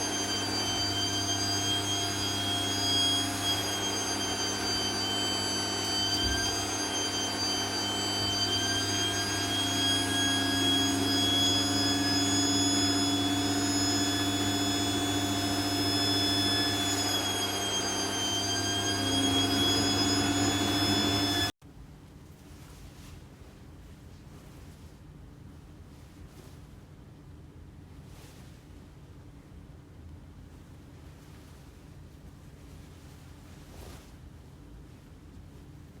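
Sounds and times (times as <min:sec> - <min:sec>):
vacuum cleaner running: 0:00.0 - 0:21.6.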